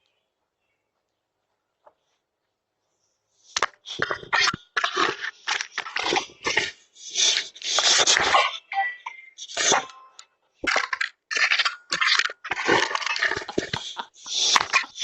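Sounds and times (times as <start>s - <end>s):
dog chewing plastic device: 10.6s - 15.0s.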